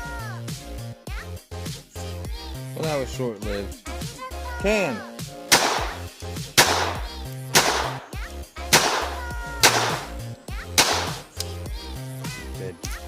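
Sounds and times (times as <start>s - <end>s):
background music: 0.0s - 13.0s
gunshots: 5.5s - 10.2s, 10.8s - 11.4s.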